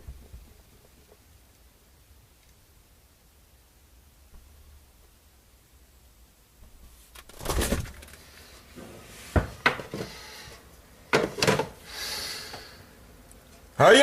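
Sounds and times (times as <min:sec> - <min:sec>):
soft rustle: 0:06.5 - 0:09.4.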